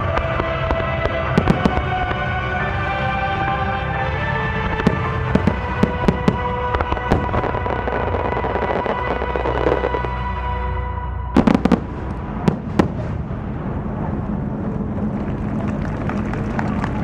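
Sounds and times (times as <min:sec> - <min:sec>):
firework bangs: 0:00.0 - 0:02.3, 0:04.7 - 0:10.2, 0:11.4 - 0:15.7
music: 0:00.0 - 0:12.8.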